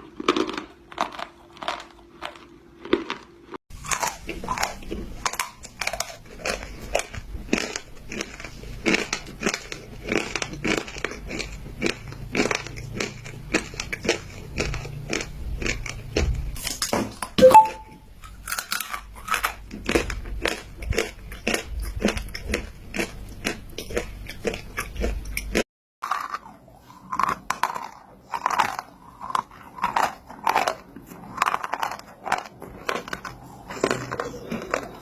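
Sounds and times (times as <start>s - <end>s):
chalk being chewed: 3.8s - 16.1s, 18.5s - 35.0s
short pitched sound: 17.4s - 18.0s.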